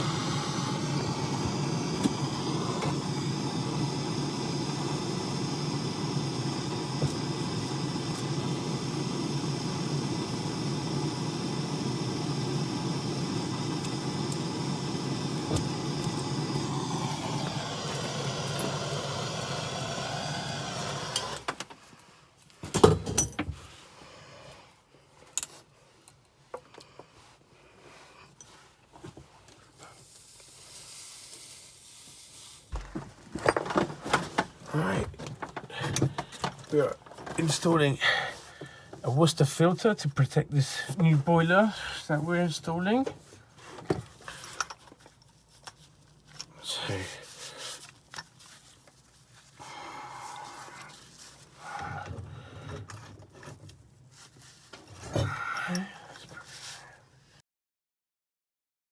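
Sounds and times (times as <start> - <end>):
motor-driven machine running: 0.0 - 21.5.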